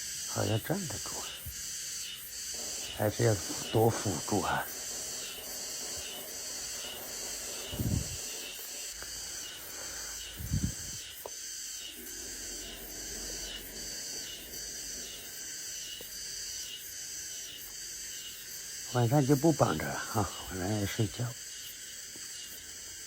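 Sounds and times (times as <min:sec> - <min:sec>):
insect chirring: 0:00.0 - 0:23.0
dull low thumps: 0:10.3 - 0:11.0.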